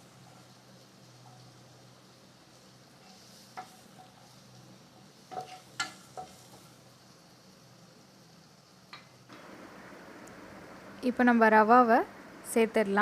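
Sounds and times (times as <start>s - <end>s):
food sizzling in oil: 0.0s - 13.0s
utensil scraping pan: 5.2s - 6.6s.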